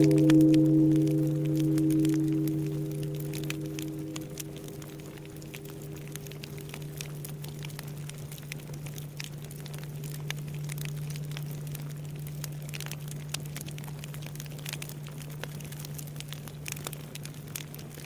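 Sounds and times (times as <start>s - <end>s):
temple bell humming: 0.0s - 7.4s
wood fire crackling and popping: 0.0s - 18.0s.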